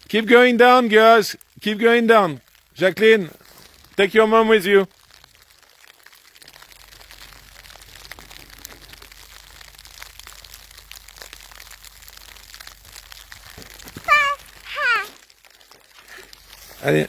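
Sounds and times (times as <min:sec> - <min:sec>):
faint crunching and crinkling: 0:02.4 - 0:17.0
high-pitched vocal call: 0:14.0 - 0:15.2.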